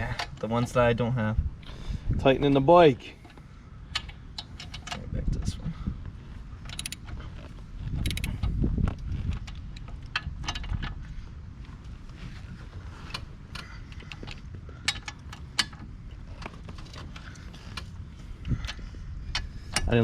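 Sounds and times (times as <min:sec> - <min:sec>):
low rumble of handling noise: 0:00.0 - 0:20.0
metallic clicks of tool on bolts: 0:06.7 - 0:07.0, 0:08.0 - 0:08.5
ratchet wrench clicking: 0:06.7 - 0:07.0, 0:08.0 - 0:08.4.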